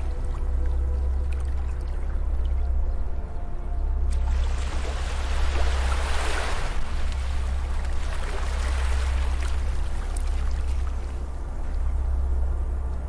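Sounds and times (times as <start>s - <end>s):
low rumble: 0.0s - 13.0s
ocean waves washing onto beach: 4.2s - 11.6s.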